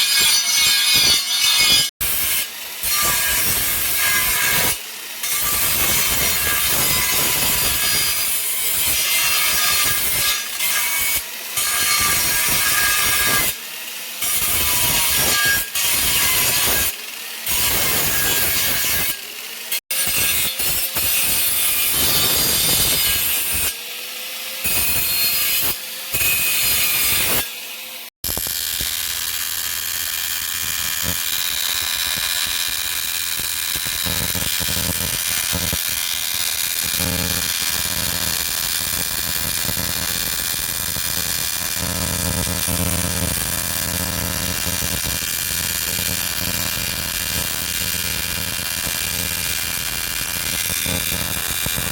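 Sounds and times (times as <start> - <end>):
power tool grinding: 21.5 - 51.9.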